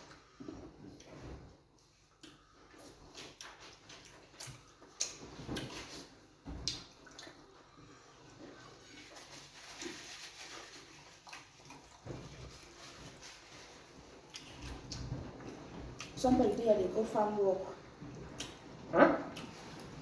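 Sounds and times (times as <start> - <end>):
wet eating smacks and slurps: 1.8 - 7.7, 8.5 - 13.2, 18.1 - 20.0.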